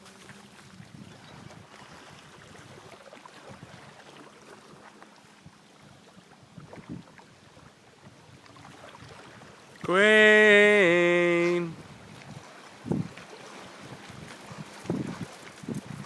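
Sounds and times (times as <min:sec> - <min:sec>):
wind noise on microphone: 0:00.6 - 0:03.9, 0:06.4 - 0:09.6, 0:11.7 - 0:16.0.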